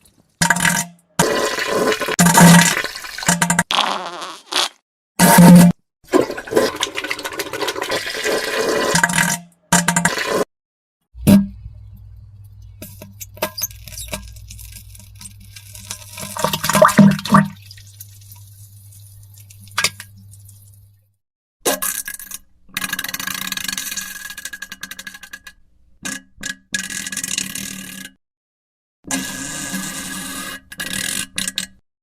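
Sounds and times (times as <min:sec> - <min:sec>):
water splashing in toilet bowl: 0:00.4 - 0:04.0, 0:06.1 - 0:10.4, 0:15.0 - 0:20.9
wet diarrhea sounds: 0:01.2 - 0:04.8.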